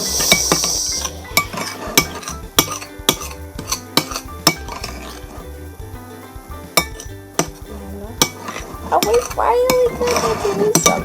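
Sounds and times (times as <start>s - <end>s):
spoon clinking against bowl: 1.4s - 5.2s, 8.2s - 11.0s.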